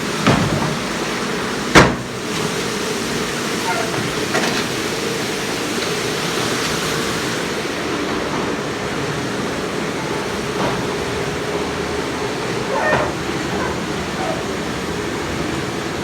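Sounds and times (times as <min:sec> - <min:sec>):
spraying water: 0:00.0 - 0:16.0
pump hum: 0:11.3 - 0:16.0.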